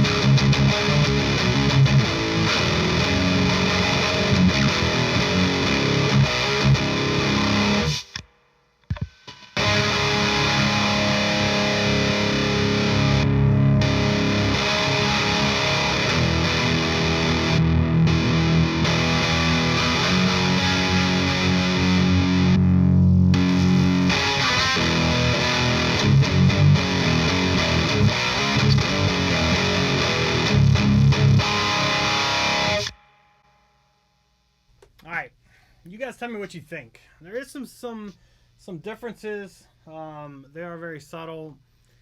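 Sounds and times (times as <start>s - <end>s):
overdriven electric guitar: 0.0s - 8.3s, 8.9s - 33.4s.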